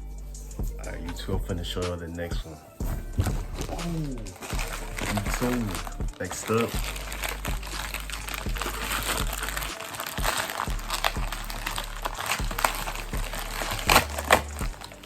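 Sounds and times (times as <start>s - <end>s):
background music with beat and bass: 0.0s - 15.0s
packaging crinkling and rustling: 3.1s - 15.0s.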